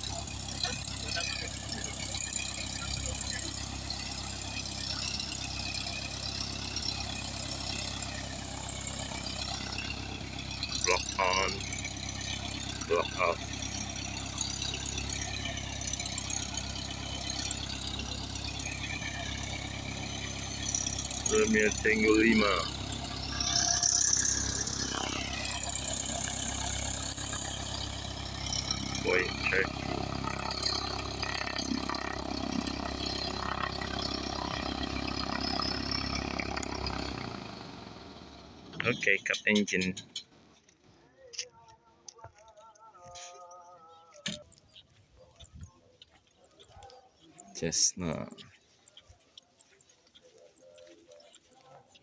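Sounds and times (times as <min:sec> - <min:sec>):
piston aircraft engine idling: 0:00.0 - 0:40.7.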